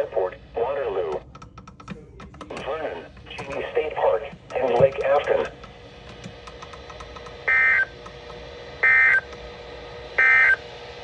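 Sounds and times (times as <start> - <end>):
faint steady hum: 0.0 - 11.0
digital data tone bursts: 7.4 - 7.9, 8.8 - 9.3, 10.2 - 10.6.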